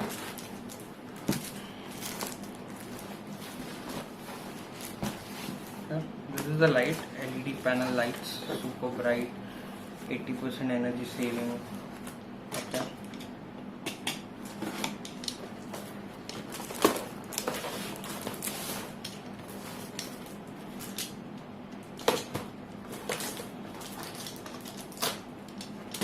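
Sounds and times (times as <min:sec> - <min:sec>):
cardboard boxes being handled: 0:00.0 - 0:08.8, 0:15.7 - 0:20.0.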